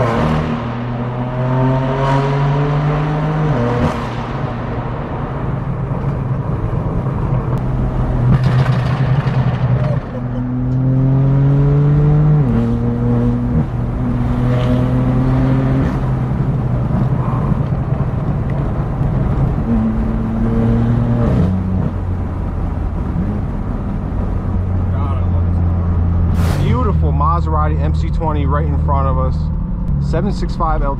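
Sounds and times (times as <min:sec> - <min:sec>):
car engine revving through gears: 0:00.0 - 0:04.8, 0:07.4 - 0:26.9.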